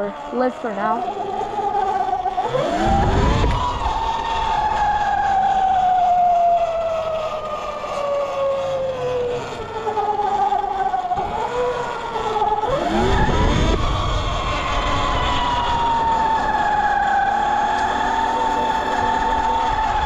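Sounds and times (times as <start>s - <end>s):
low rumble: 0.0s - 6.9s, 12.9s - 17.1s
electric motor whining: 0.0s - 20.0s.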